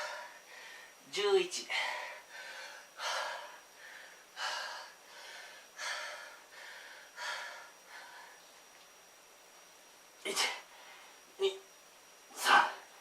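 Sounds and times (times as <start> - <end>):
man breathing hard: 0.0 - 1.0, 1.7 - 8.5.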